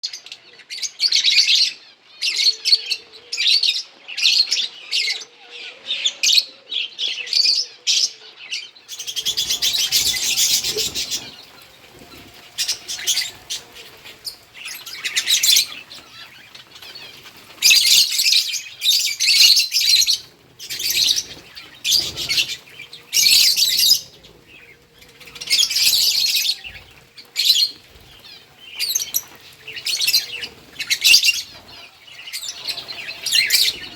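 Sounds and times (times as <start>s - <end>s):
lovebirds chirping: 0.0s - 33.9s.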